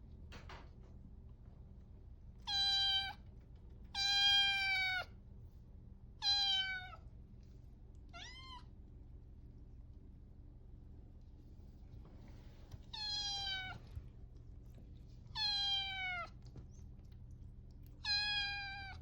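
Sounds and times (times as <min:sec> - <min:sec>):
cat meowing: 0:06.2 - 0:07.0, 0:12.9 - 0:13.8, 0:15.4 - 0:16.4, 0:18.0 - 0:19.0.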